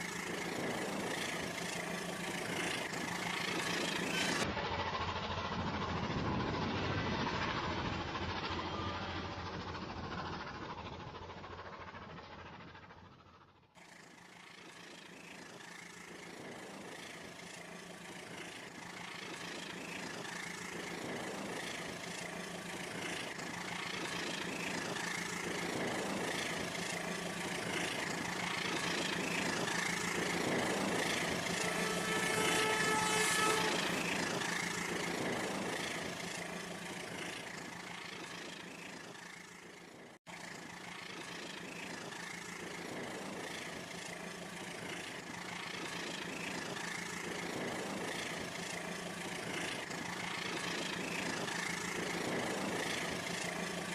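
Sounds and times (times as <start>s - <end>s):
toy train whirring on track: 0.0s - 53.9s
short pitched tone: 31.5s - 34.5s.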